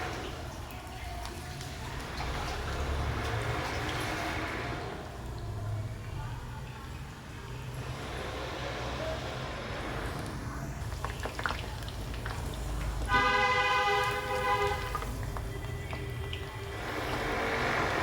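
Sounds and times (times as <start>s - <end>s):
vehicle horn: 13.1s - 15.2s.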